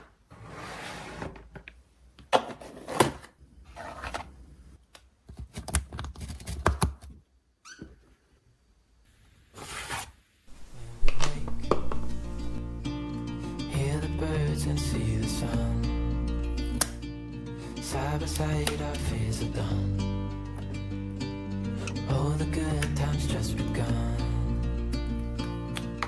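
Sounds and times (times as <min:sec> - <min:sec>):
soft guitar music: 0:10.6 - 0:26.0.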